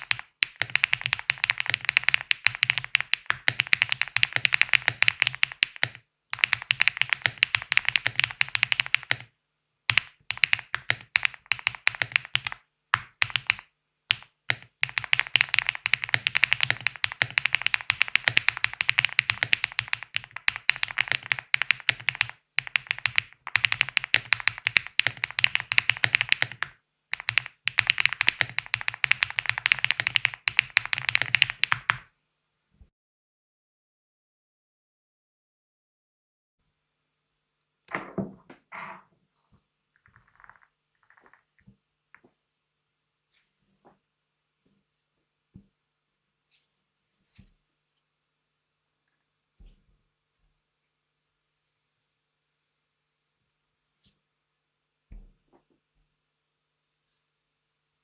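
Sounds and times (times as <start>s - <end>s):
typing on mechanical keyboard: 0.0s - 9.3s, 9.9s - 32.0s.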